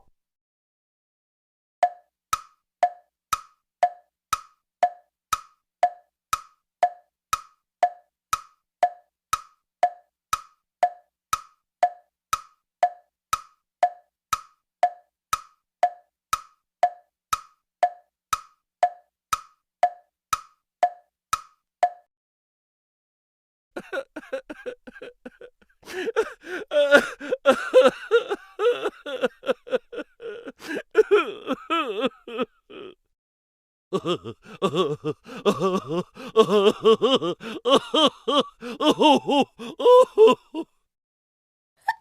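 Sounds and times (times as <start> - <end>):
sharp woody ticking clicks: 1.8 - 22.0.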